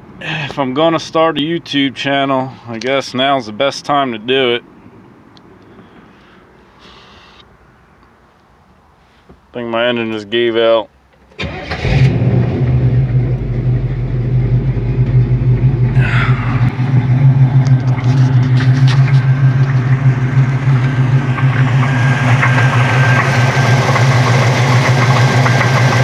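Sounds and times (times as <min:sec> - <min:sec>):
car engine running with knock: 0:13.3 - 0:26.0
metallic clatter: 0:16.9 - 0:25.8.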